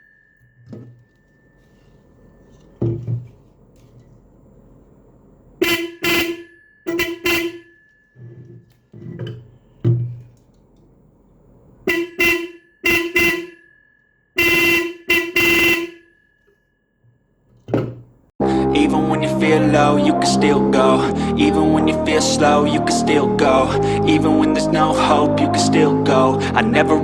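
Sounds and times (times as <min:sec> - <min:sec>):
electric horn blasts: 0:05.6 - 0:07.8, 0:11.9 - 0:13.7, 0:14.4 - 0:16.2.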